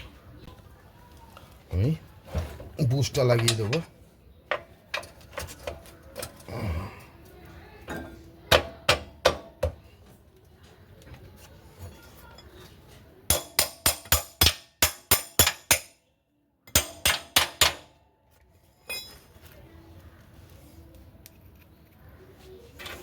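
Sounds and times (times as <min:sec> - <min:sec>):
hammer tapping on metal: 0:08.5 - 0:09.8, 0:13.3 - 0:15.9, 0:16.7 - 0:17.9.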